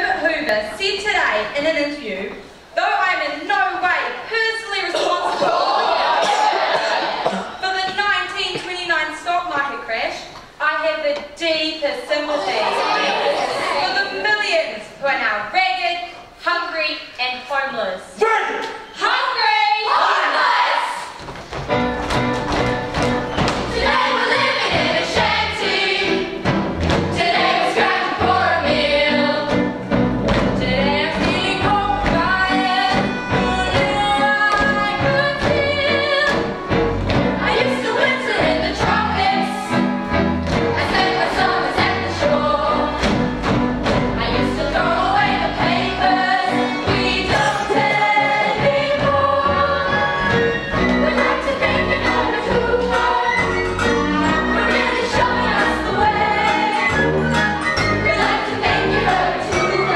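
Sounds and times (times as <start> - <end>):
chorus singing: 4.9 - 7.6, 12.3 - 14.2, 19.0 - 21.2, 22.6 - 59.9
band accompaniment: 21.5 - 59.9.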